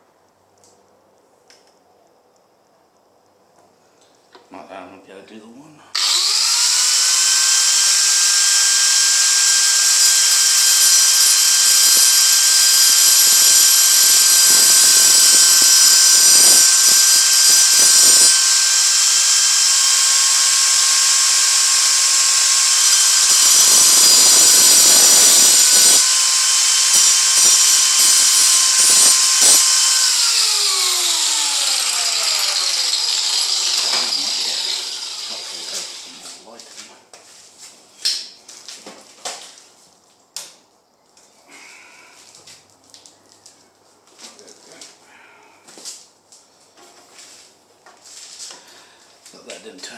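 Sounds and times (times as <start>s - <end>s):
power tool cutting steel: 6.0s - 36.4s.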